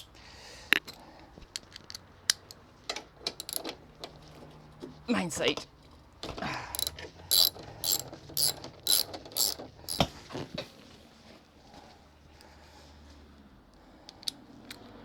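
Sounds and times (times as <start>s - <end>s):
socket ratchet clicking: 0.0s - 2.6s, 3.3s - 4.2s, 6.7s - 10.1s.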